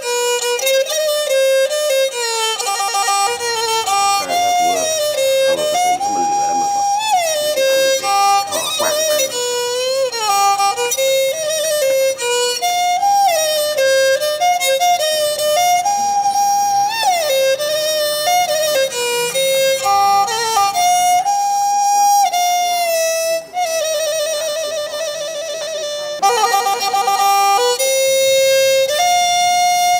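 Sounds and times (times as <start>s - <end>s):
solo bowed string melody: 0.0s - 8.5s.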